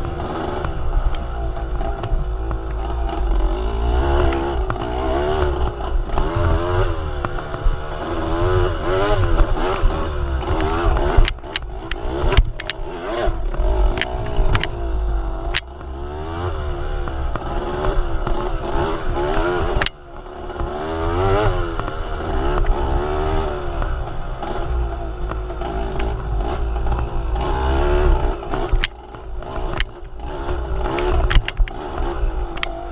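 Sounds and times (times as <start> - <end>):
vehicle engine revving: 0.0 - 32.9.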